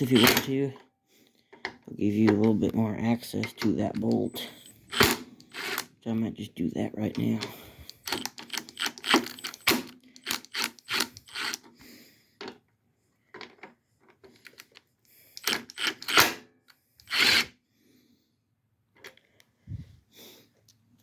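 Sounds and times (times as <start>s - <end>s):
metal tools clicking and clinking: 0.0s - 0.8s, 2.1s - 5.9s, 7.1s - 11.7s, 15.4s - 16.4s.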